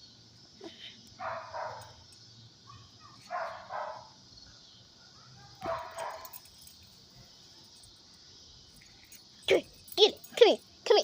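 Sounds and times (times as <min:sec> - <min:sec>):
dog barking: 0:01.2 - 0:02.0, 0:02.7 - 0:04.2, 0:05.2 - 0:06.4.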